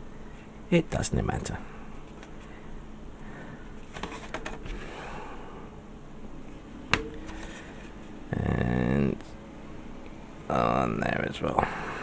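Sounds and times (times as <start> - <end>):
plastic handling and rubbing: 3.6 - 4.9, 6.4 - 8.2.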